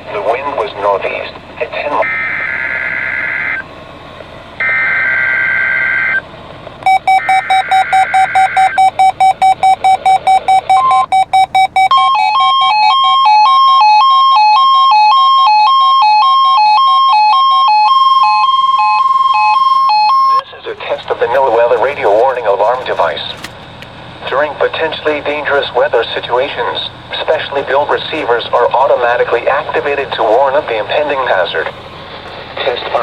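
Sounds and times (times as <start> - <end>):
electronic alert beeping: 6.8 - 14.2, 17.7 - 22.0.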